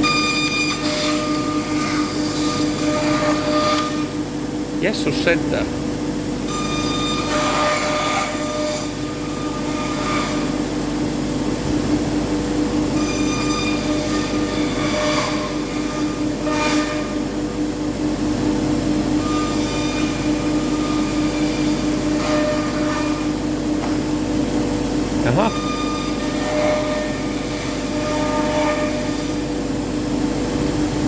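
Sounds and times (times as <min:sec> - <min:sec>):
cutter milling wood: 0:25.2 - 0:27.9.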